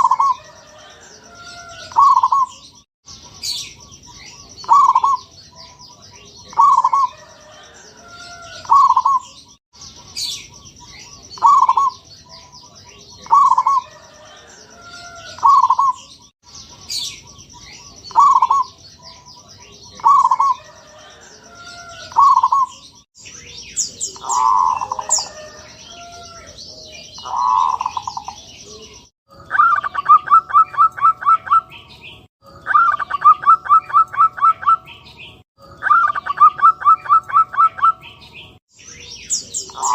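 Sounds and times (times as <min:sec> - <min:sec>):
dove cooing: 0:00.0 - 0:02.6, 0:04.6 - 0:05.3, 0:06.4 - 0:09.4, 0:11.4 - 0:12.0, 0:13.1 - 0:16.0, 0:18.1 - 0:18.8, 0:19.9 - 0:22.8, 0:23.9 - 0:31.6, 0:39.4 - 0:39.9
small birds chirping: 0:00.0 - 0:39.9.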